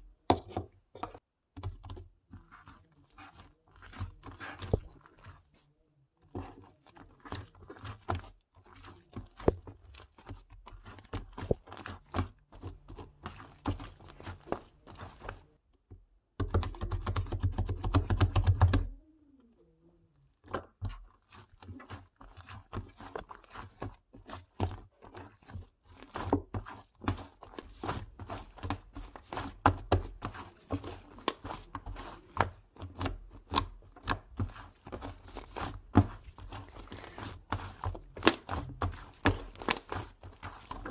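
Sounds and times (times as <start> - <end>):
slime squished by hand: 20.3 - 40.9.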